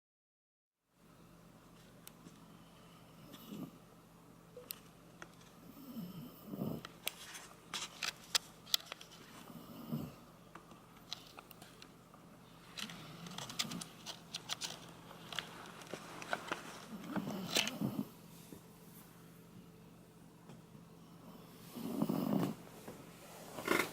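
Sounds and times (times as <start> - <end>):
dog snoring softly: 3.1 - 3.8, 5.6 - 6.8, 9.4 - 10.2, 16.9 - 18.2, 21.2 - 22.6.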